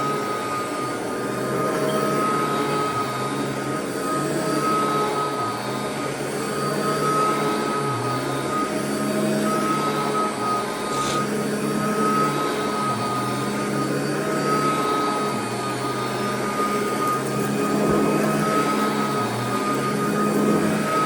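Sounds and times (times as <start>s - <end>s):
vacuum cleaner running: 0.0s - 21.0s.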